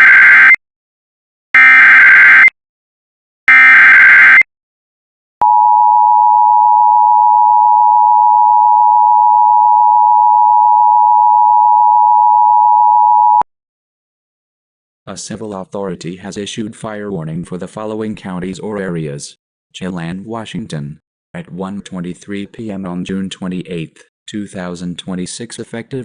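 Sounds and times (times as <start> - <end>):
steady dual tone attention signal: 5.4 - 13.4.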